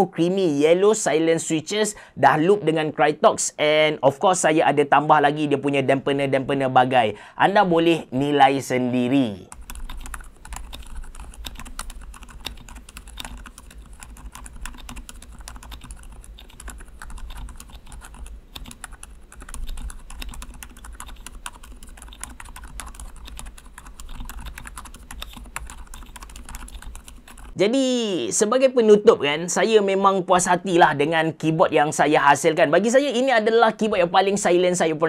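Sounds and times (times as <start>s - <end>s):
fast typing on keyboard: 9.5s - 27.6s.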